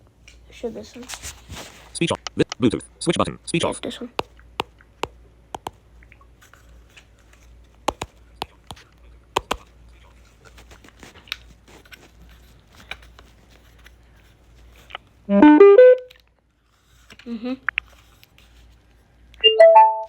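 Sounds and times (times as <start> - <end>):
clicks and taps of handling: 4.2 - 5.8, 7.8 - 9.6
speaker chime rising notes: 19.4 - 20.0.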